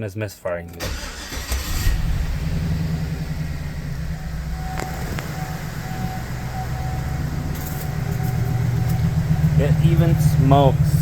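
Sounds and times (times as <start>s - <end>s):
engine idling unevenly: 0.9s - 11.0s.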